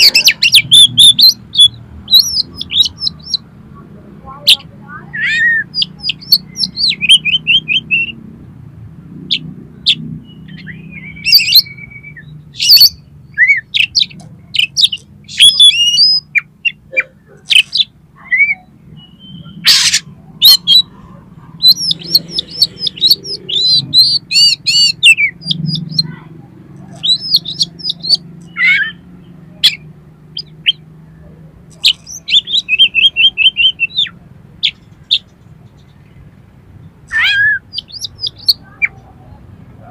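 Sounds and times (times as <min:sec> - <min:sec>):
bird singing whistled trills: 0:00.0 - 0:03.4, 0:04.5 - 0:08.2, 0:09.9 - 0:20.9, 0:21.6 - 0:26.0, 0:26.9 - 0:30.8, 0:31.8 - 0:35.3, 0:37.1 - 0:39.0.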